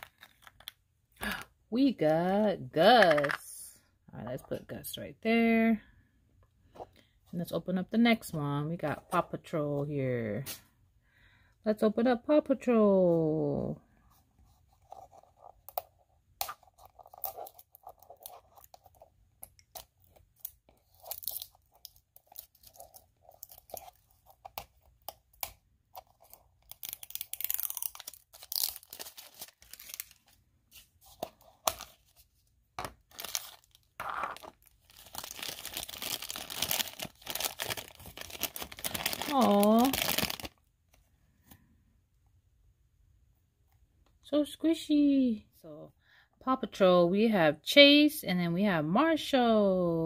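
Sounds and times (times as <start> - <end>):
wrapping crinkling and tearing: 0.0 - 1.4, 19.7 - 32.2, 33.0 - 40.6.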